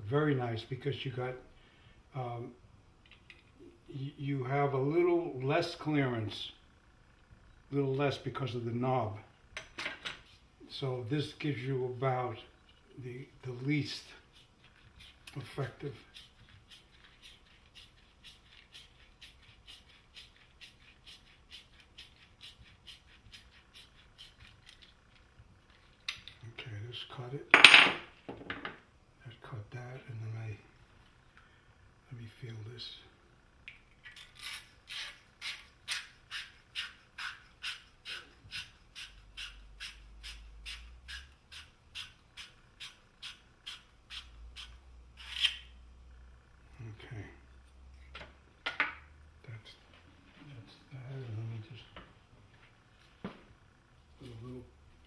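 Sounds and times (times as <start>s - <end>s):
pipe cutter scoring copper pipe: 34.3s - 45.7s.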